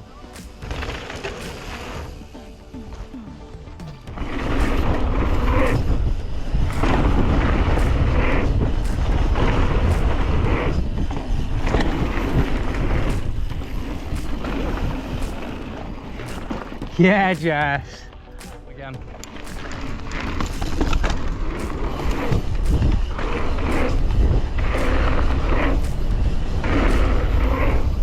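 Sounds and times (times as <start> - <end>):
mountain bike rumbling over dirt: 0.6 - 3.1, 4.0 - 18.3, 18.9 - 28.0
wind on microphone: 4.1 - 17.0, 18.9 - 28.0.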